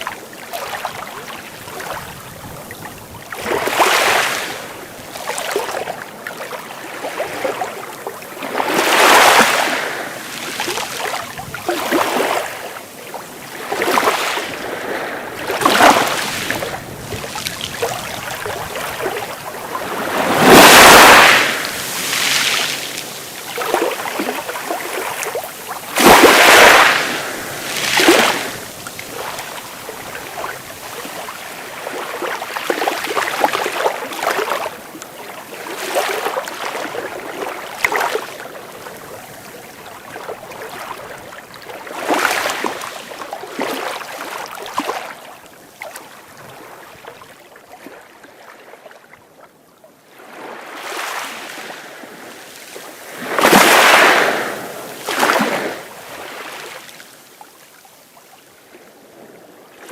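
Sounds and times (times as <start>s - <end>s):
sea waves breaking: 0.0s - 47.3s, 50.1s - 57.4s.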